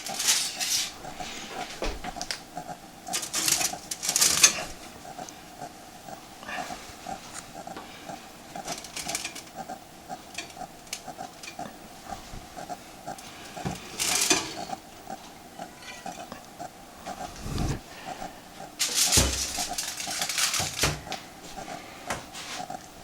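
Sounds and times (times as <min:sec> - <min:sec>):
aluminium foil rustling: 0:00.0 - 0:02.4, 0:03.1 - 0:04.9, 0:18.8 - 0:21.2.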